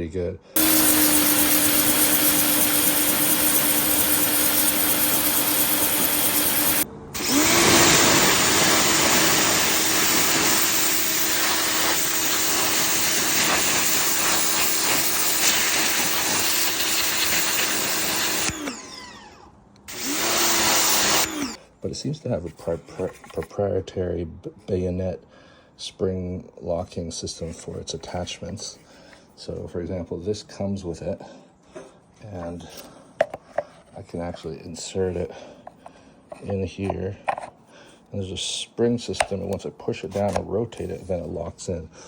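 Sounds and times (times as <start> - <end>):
electric pressure washer running: 0.6 - 21.6.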